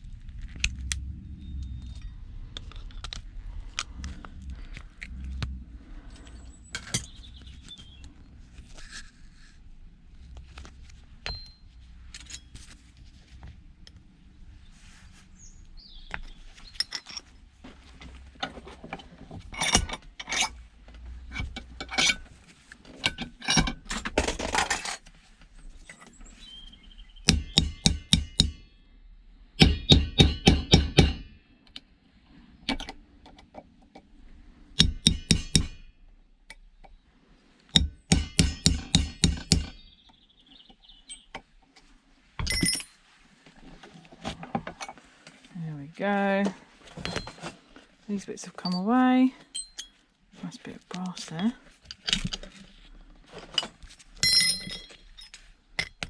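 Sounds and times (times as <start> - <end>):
metal clinking and scraping: 6.0 - 7.5, 11.3 - 13.0, 16.2 - 17.4, 18.4 - 25.1, 41.1 - 45.1, 46.9 - 47.8, 48.6 - 50.0, 51.0 - 56.0
rapid metal strikes: 27.3 - 28.7, 29.6 - 31.4, 34.8 - 35.9, 37.8 - 39.8.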